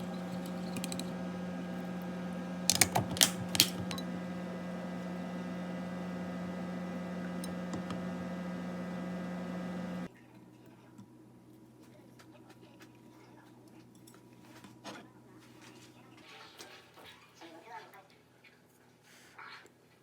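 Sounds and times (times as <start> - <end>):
steady hum: 0.0 - 10.1.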